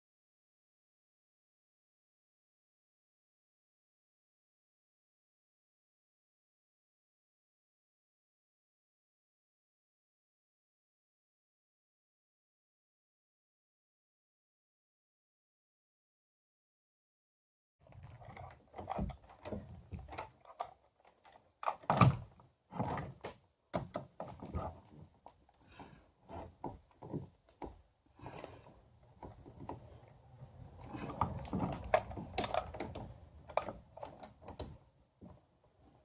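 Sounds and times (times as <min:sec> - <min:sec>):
plastic parts knocking and clicking: 0:17.8 - 0:30.0, 0:30.8 - 0:35.4.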